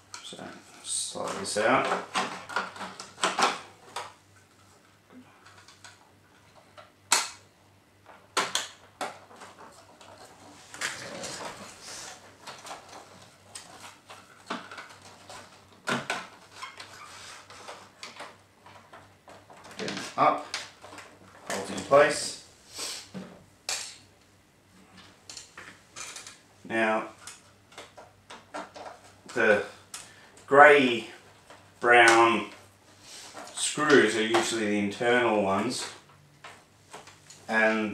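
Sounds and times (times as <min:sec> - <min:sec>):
plastic scraping and rustling: 0:00.1 - 0:06.9, 0:08.0 - 0:22.3, 0:24.8 - 0:37.9
plastic parts clicking: 0:01.2 - 0:04.2, 0:25.0 - 0:26.4.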